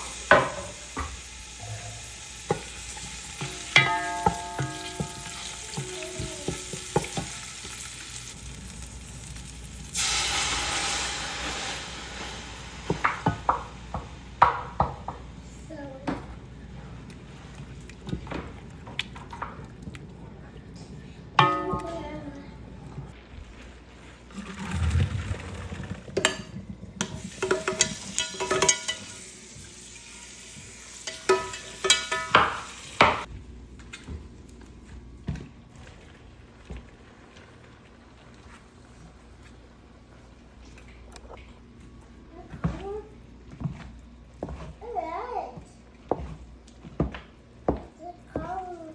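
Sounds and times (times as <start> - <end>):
food sizzling in oil: 0.0 - 15.0, 24.4 - 33.3
utensil scraping and clinking pot: 0.3 - 8.4, 23.7 - 33.3.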